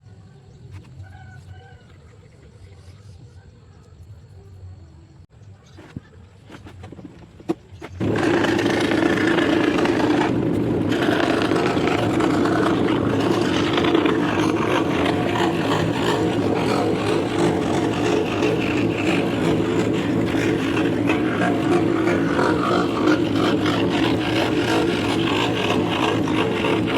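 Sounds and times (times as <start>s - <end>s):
electric scroll saw running: 8.0s - 26.9s.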